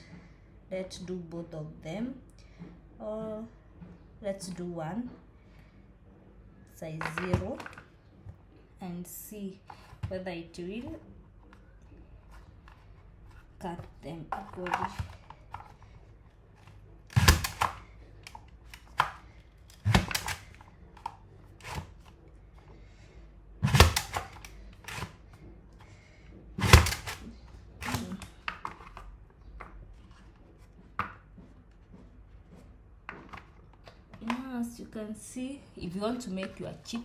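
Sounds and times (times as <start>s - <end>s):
mandoline slicer blade thunks: 18.8s - 20.6s, 23.6s - 25.2s, 26.6s - 28.2s.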